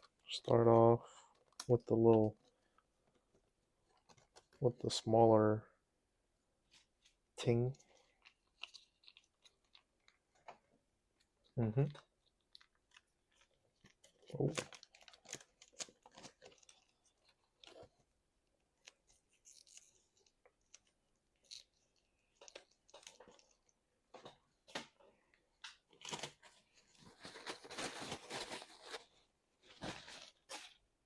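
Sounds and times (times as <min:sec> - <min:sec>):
chewing and crunching: 0:07.8 - 0:10.2.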